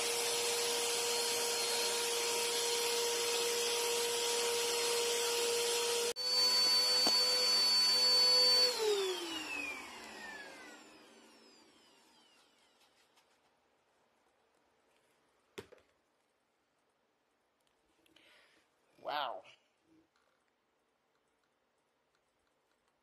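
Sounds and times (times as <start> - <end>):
vacuum cleaner motor whine: 0.0 - 13.0.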